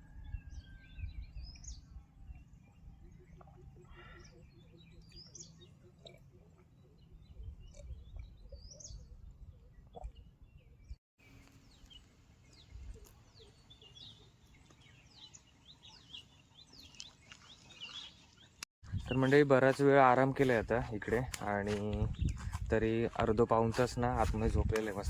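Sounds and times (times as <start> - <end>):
birds chirping and whistling: 0.2 - 5.8, 7.0 - 19.8, 20.4 - 25.0.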